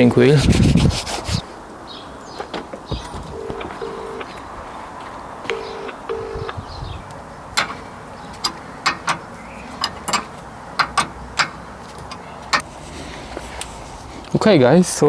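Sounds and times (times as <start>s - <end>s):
sharp clicks and knocks: 5.5s - 12.7s.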